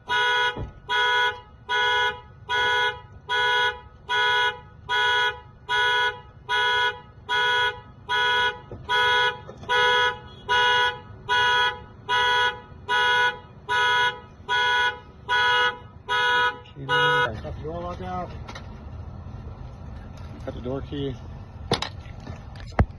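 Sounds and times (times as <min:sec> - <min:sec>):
car horn alarm blaring in pulses: 0:00.0 - 0:17.3.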